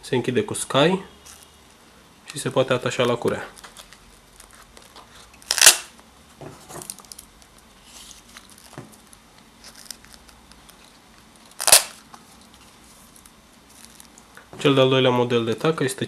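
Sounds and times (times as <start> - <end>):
velcro tearing rip: 5.4 - 5.9, 11.5 - 12.0.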